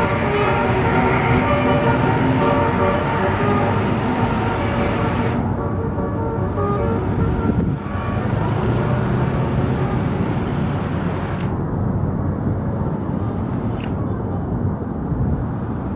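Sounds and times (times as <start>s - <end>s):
multi-tone horn tune: 0.0s - 10.4s
bus engine rumbling: 0.0s - 15.9s.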